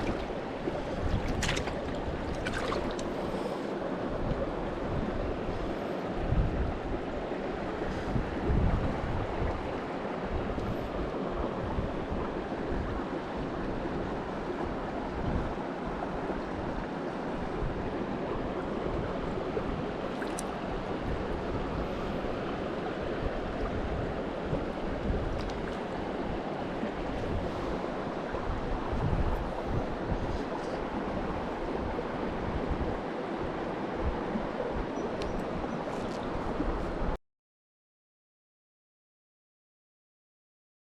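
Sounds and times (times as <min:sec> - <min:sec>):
stream water rushing: 0:00.0 - 0:37.1
wind on microphone: 0:00.0 - 0:37.2.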